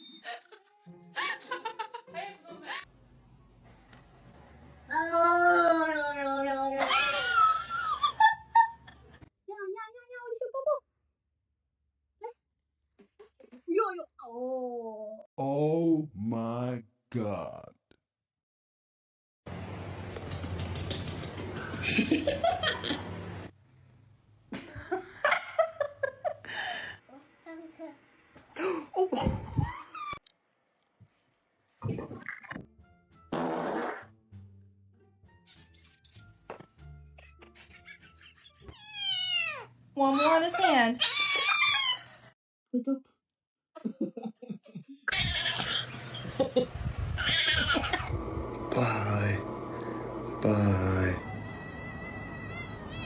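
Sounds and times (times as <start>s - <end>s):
people laughing: 1.2s - 2.2s, 6.8s - 9.2s, 21.6s - 23.2s, 43.8s - 46.8s
cat crying: 38.6s - 42.1s, 45.1s - 45.9s, 47.2s - 48.1s, 51.2s - 53.0s
low hum: 47.8s - 53.0s.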